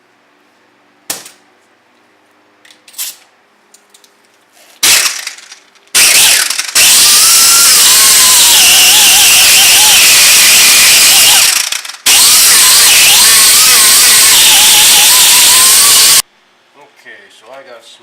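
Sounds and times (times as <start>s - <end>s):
die grinder whining on metal: 4.8s - 16.2s.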